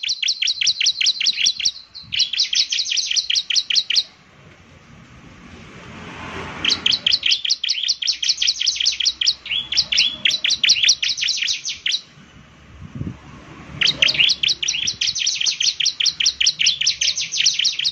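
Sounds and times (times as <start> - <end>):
bird trilling high chirps: 0.0 - 4.2, 6.6 - 12.2, 13.7 - 17.9.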